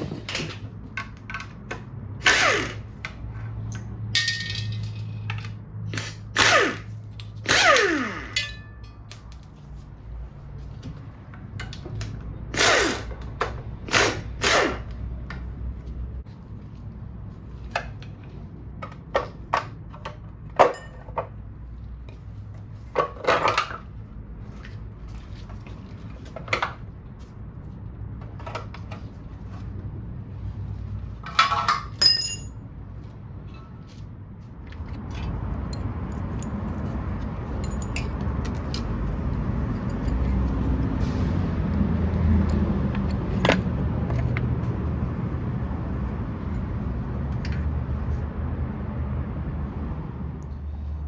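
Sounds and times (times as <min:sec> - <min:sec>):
metal tools clinking and rattling: 0:03.6 - 0:06.2, 0:07.2 - 0:09.5, 0:20.0 - 0:21.4, 0:31.2 - 0:32.6, 0:35.0 - 0:40.8
loud ringing metal clinks: 0:08.2 - 0:09.1, 0:32.0 - 0:32.6.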